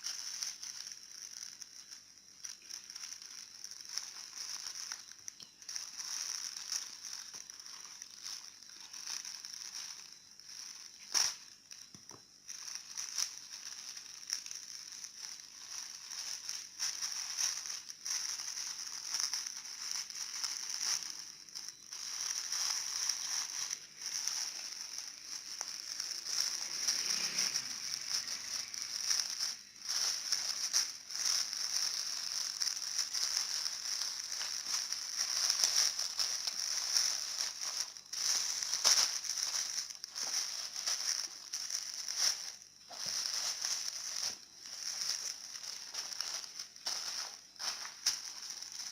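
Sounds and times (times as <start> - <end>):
packaging crinkling and rustling: 0.0 - 48.9
steady high hiss: 0.0 - 48.9.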